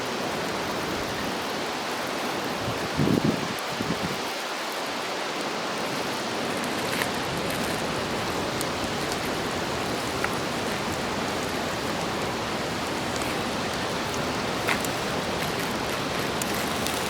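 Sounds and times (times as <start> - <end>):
food sizzling on griddle: 5.6 - 17.0.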